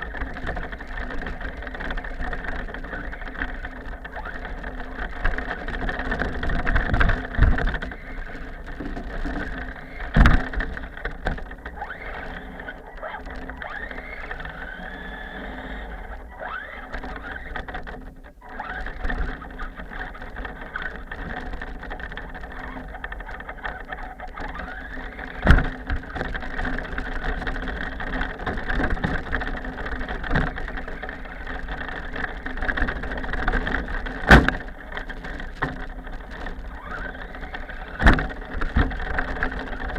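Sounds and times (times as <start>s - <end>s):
rc car motor whining: 0.0s - 17.8s, 18.4s - 21.4s, 22.2s - 39.9s
car bumping knocks: 34.3s - 34.6s.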